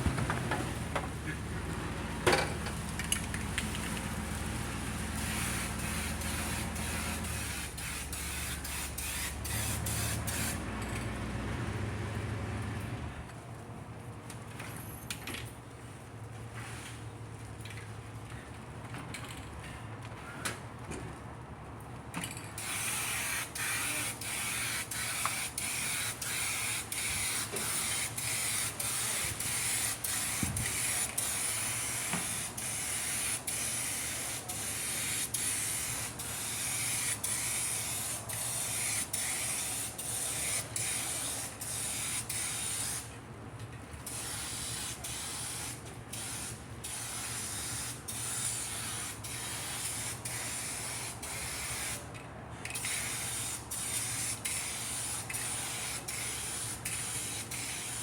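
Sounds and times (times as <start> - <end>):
spray paint can hissing: 5.2 - 10.6, 22.6 - 43.1, 44.0 - 52.0, 52.7 - 58.0.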